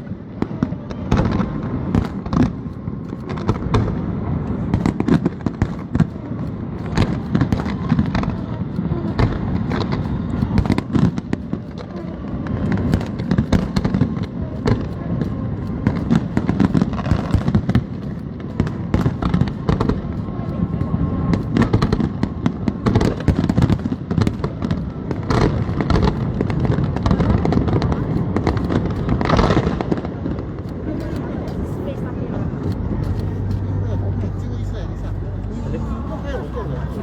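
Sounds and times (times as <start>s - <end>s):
fireworks booming and crackling: 0.0s - 34.2s
low rumble: 24.5s - 37.0s.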